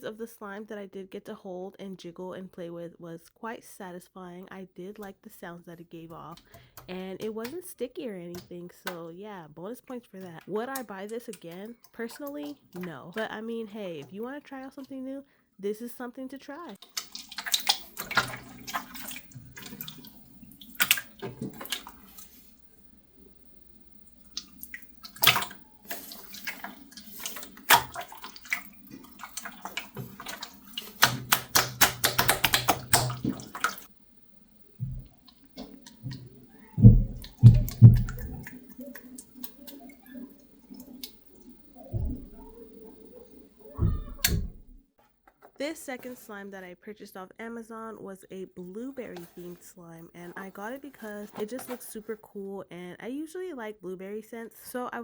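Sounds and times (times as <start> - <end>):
slime squishing: 9.8 - 15.0, 16.5 - 46.4, 48.8 - 52.2
slime squelching thuds: 10.2 - 14.2, 16.6 - 44.8, 45.4 - 46.2, 49.0 - 52.0.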